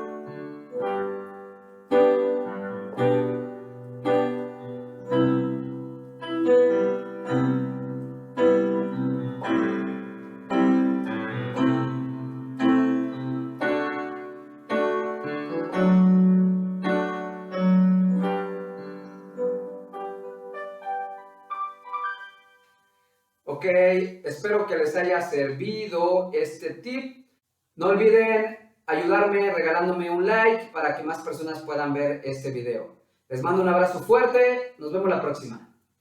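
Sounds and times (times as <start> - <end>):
piano chord progression: 0.0 - 23.0.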